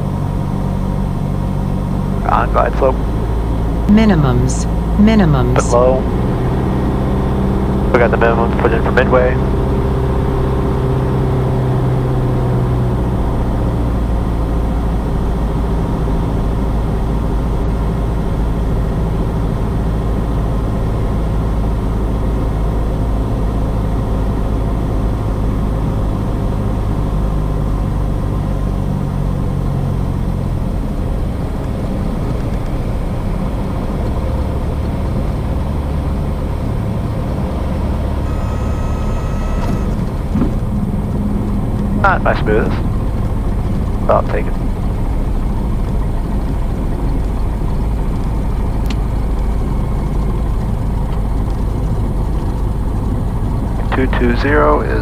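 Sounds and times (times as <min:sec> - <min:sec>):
light aircraft engine running: 0:00.0 - 0:55.0
steady high tone: 0:03.9 - 0:06.2, 0:38.2 - 0:40.3.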